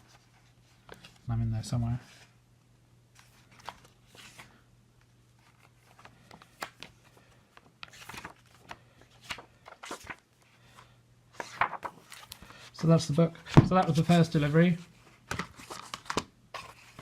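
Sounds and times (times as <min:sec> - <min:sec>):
paper pages rustling: 0:03.2 - 0:04.6, 0:05.4 - 0:17.0.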